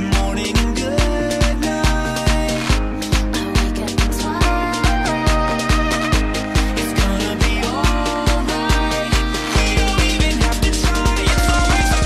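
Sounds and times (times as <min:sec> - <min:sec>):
electronic dance music: 0:00.0 - 0:12.0
pounding bass drum beat: 0:00.0 - 0:12.0.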